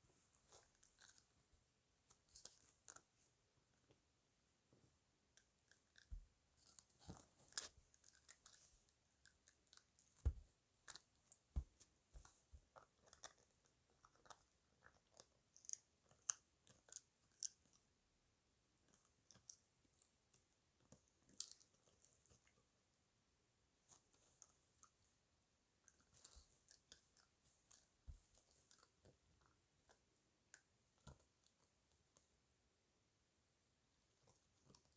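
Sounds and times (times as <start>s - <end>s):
puppy chewing and crunching: 12.7s - 17.8s.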